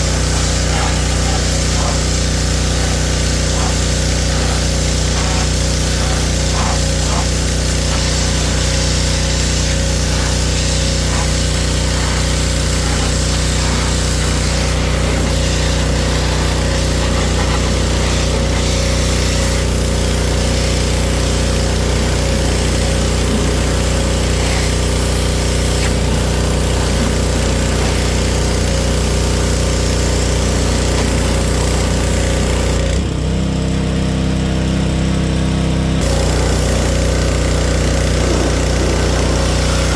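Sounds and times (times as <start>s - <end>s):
hiss: 0.0s - 28.8s
machine motor humming: 0.0s - 31.6s, 36.0s - 39.9s.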